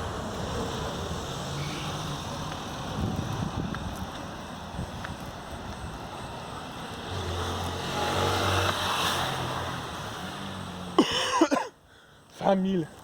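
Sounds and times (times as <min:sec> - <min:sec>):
bus engine hum: 0:00.0 - 0:07.2
road noise: 0:00.0 - 0:13.0.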